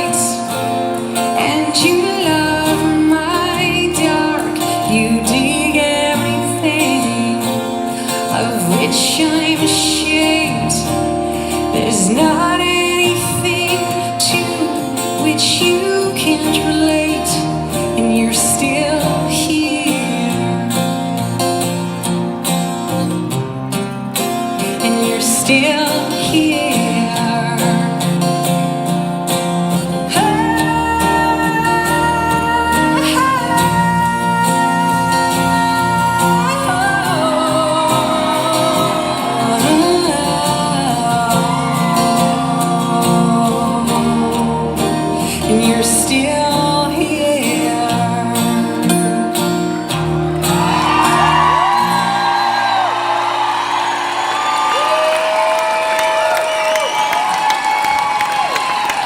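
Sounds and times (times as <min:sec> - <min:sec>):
strummed guitar: 0:00.0 - 0:59.0
live band playing: 0:25.9 - 0:46.8
audience cheering and whooping: 0:36.6 - 0:43.2, 0:50.3 - 0:59.0.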